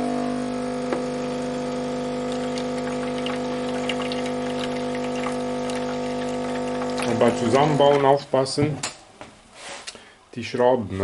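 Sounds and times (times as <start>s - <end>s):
coffee machine pump humming: 0.0s - 8.6s.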